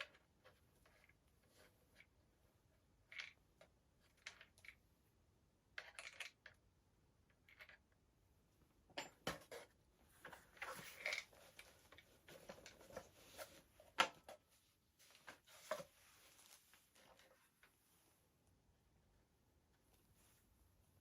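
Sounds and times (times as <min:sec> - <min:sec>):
plastic parts clicking and rubbing: 0:09.3 - 0:14.5.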